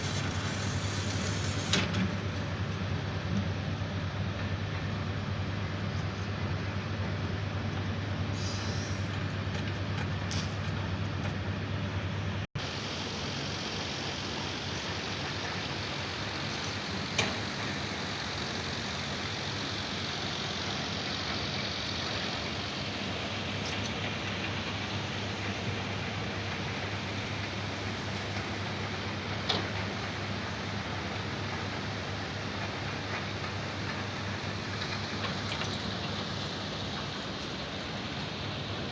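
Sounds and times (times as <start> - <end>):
heavy machinery humming: 0.0 - 38.9
hissy wash: 8.3 - 9.1.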